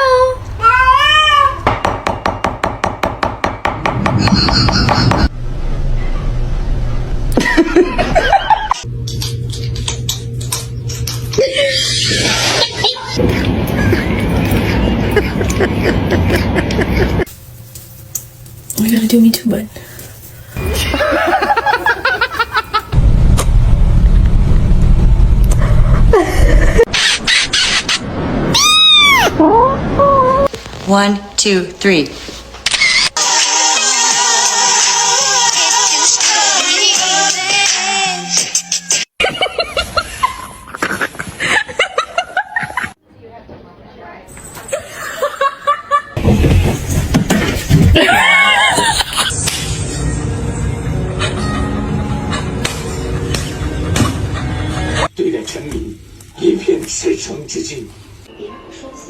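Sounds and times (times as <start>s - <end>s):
loud low rumble: 4.0s - 9.0s, 13.2s - 17.2s, 23.0s - 26.9s
cat meowing: 28.5s - 29.4s.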